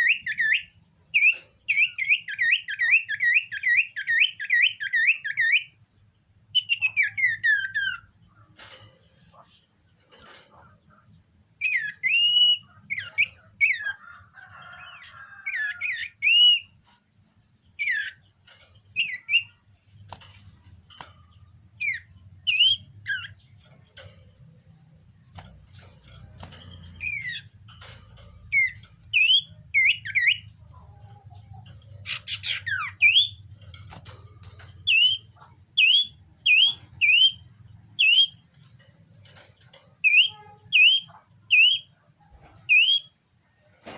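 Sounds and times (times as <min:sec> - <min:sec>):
bird whistled calls: 0:06.6 - 0:08.1, 0:11.6 - 0:14.0, 0:15.5 - 0:16.7, 0:32.1 - 0:33.4.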